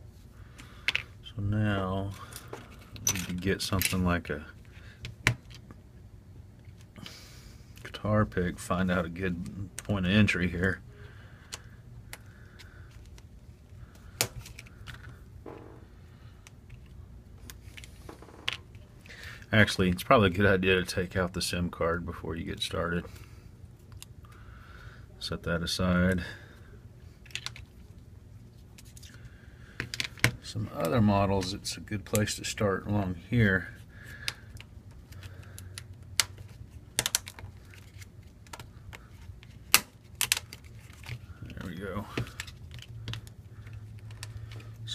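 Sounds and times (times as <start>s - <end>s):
plastic clips snapping: 34.2s - 37.4s.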